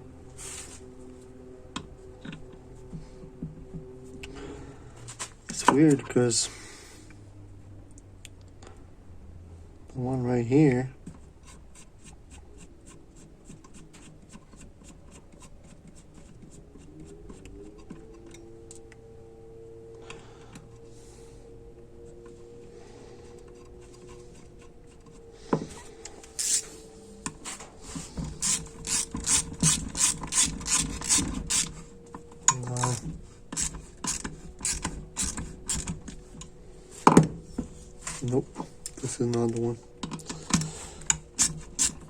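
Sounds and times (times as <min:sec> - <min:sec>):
hand ratchet clicking: 0:26.4 - 0:26.6, 0:28.4 - 0:31.8, 0:33.5 - 0:36.1.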